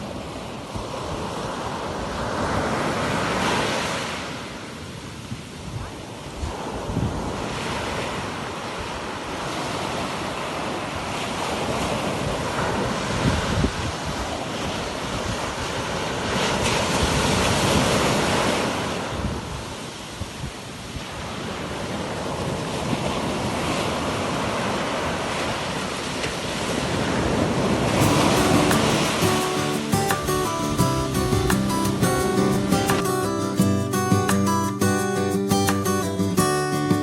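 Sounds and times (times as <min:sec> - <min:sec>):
ocean surf breaking: 0:00.0 - 0:37.0
wind buffeting microphone: 0:05.6 - 0:09.0, 0:11.7 - 0:18.4.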